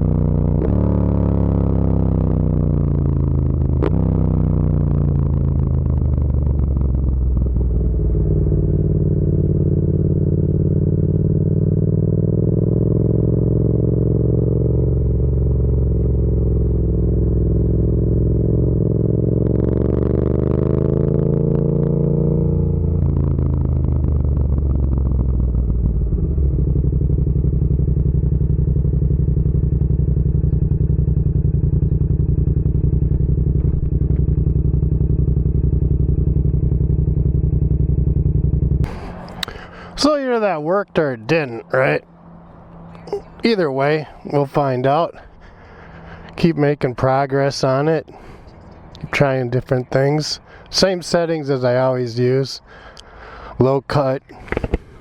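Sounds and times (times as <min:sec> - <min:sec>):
motorcycle engine and exhaust running: 0:00.0 - 0:55.0.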